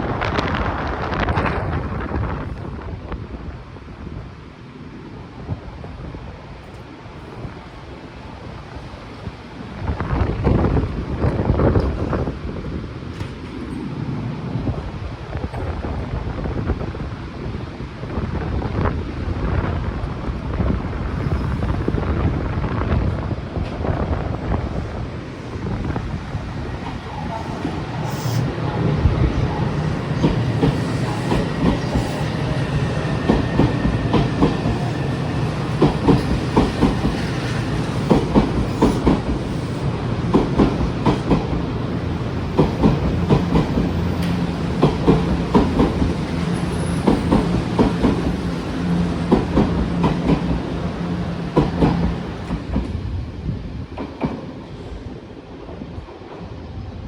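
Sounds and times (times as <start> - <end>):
train running hum: 0.0 - 57.0
train wheels clicking over rail joints: 30.1 - 41.8, 42.4 - 53.0.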